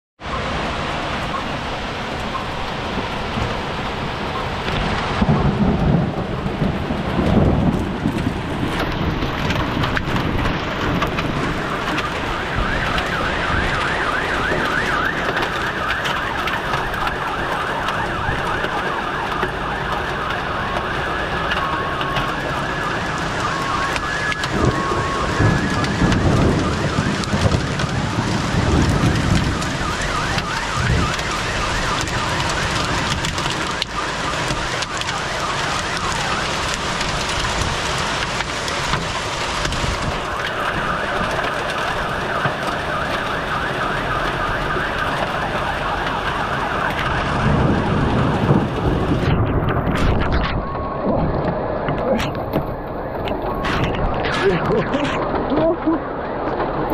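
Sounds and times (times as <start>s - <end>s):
hail and heavy rain: 0.2s - 56.9s
warbling car alarm: 1.2s - 7.0s, 8.7s - 56.9s.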